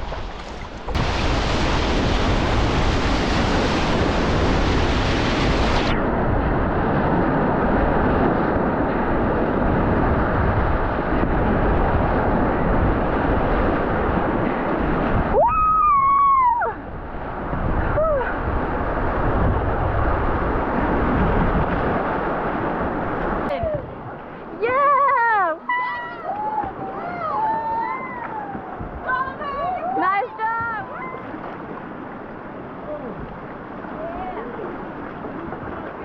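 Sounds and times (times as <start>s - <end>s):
rushing whitewater: 0.0s - 6.1s, 6.8s - 36.0s
wind on microphone: 0.0s - 25.0s, 25.8s - 36.0s
person whooping: 15.4s - 16.8s.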